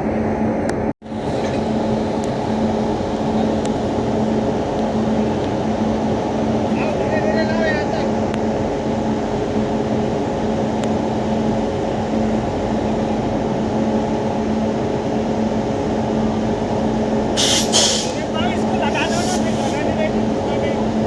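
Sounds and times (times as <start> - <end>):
locomotive cooling blowers humming: 0.0 - 21.0
hiss of released air: 17.4 - 18.3, 18.9 - 19.9.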